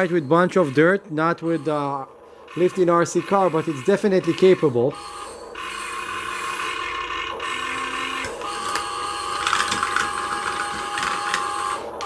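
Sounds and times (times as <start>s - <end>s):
small electric motors whirring: 2.5s - 12.0s.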